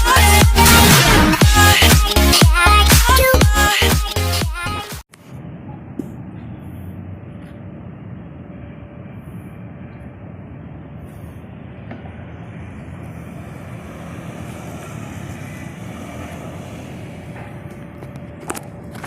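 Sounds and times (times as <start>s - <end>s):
outdoor background rumble: 5.1s - 19.0s.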